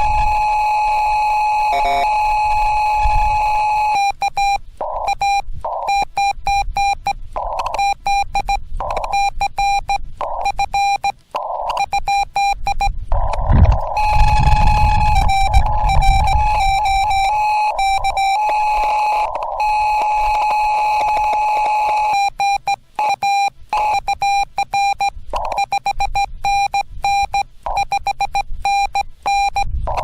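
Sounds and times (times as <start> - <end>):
morse code tones: 0.0 - 30.0
radio static hiss: 0.0 - 30.0.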